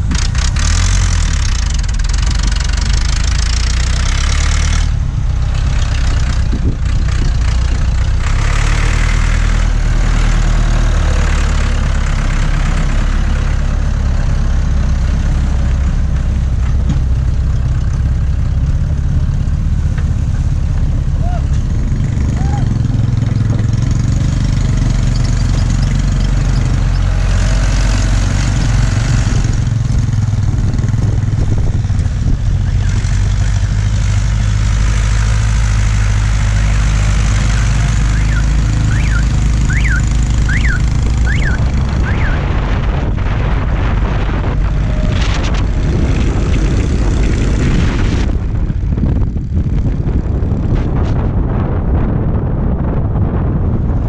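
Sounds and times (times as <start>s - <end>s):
excavator diesel engine drone: 0.0s - 54.0s.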